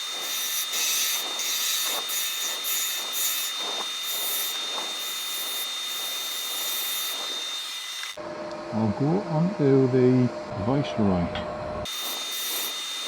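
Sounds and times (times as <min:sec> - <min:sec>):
wood turning tool hissing: 0:00.0 - 0:08.2, 0:11.8 - 0:13.0
thin steady high whine: 0:00.0 - 0:13.0.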